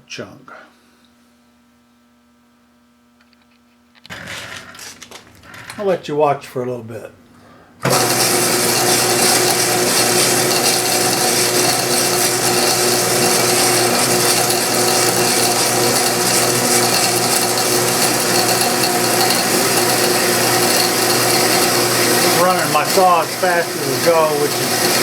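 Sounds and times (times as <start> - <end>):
bandsaw cutting metal: 7.8 - 25.0.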